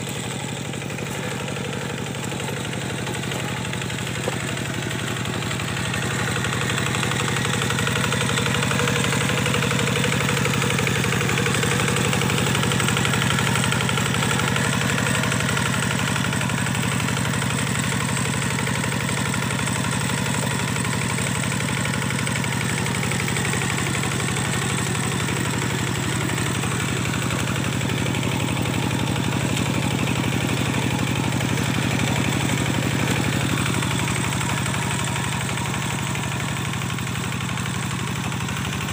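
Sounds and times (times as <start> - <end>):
diesel tractor engine running: 0.0 - 38.9.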